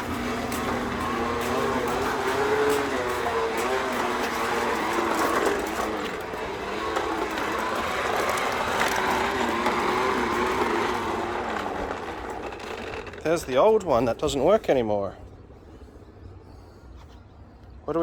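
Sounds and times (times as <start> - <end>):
toy motor whirring: 0.0 - 13.4.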